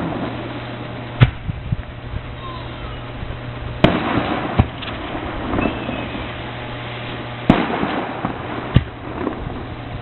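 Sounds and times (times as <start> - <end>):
echoing rumble: 0.0 - 10.0
firework shells banging: 3.8 - 6.5.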